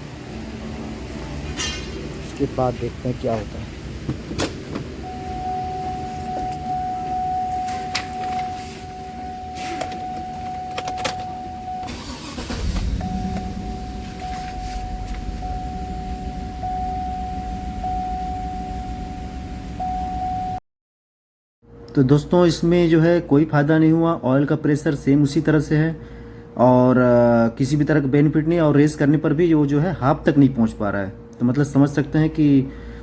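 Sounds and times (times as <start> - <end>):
electronic warning tone: 5.0 - 20.6
keys clicking in ignition: 7.4 - 8.7, 9.7 - 13.5
engine cranking starting and idling: 9.6 - 18.0.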